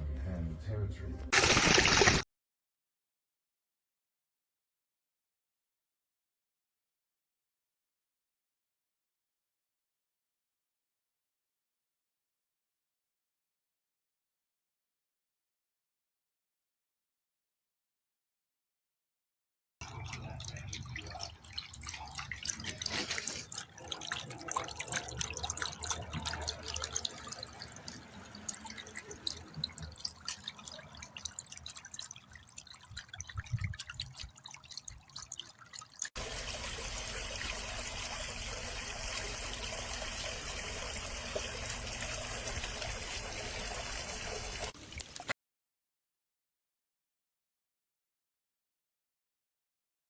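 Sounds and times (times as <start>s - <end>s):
water splashing and trickling: 1.3s - 2.2s, 19.8s - 45.4s
rush of running water: 1.4s - 2.2s, 36.2s - 45.3s.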